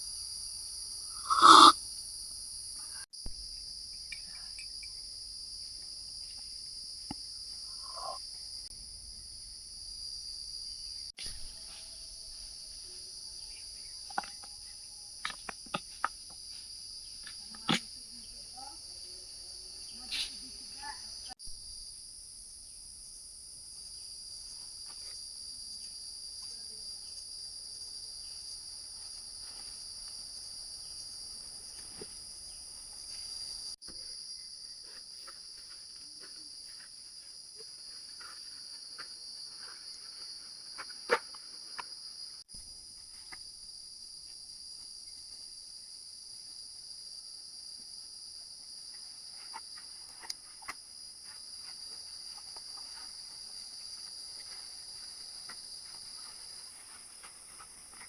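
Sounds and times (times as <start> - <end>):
high-pitched insect chorus: 0.0 - 2.8.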